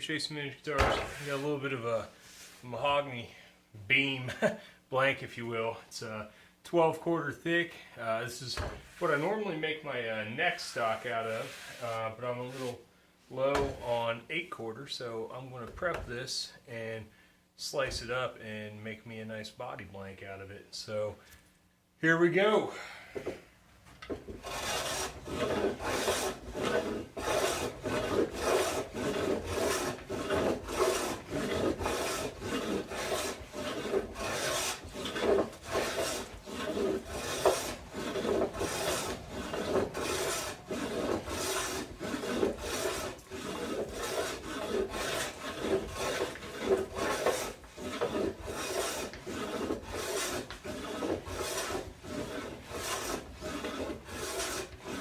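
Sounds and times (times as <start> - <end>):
hand tool shaving wood: 24.1 - 55.0.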